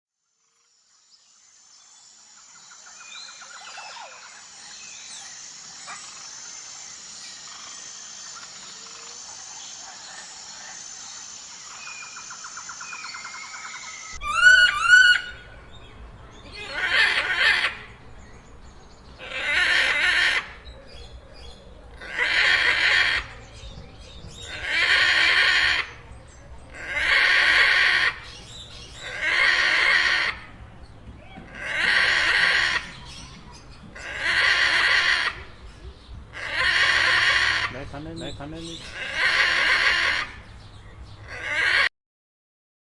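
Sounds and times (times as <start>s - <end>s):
high insect drone: 0.4s - 14.2s
macaws screeching: 2.6s - 15.5s, 16.5s - 17.9s, 19.2s - 20.6s, 21.9s - 23.4s, 24.4s - 26.0s, 26.7s - 30.6s, 31.2s - 35.6s, 36.3s - 40.5s, 41.2s - 41.9s.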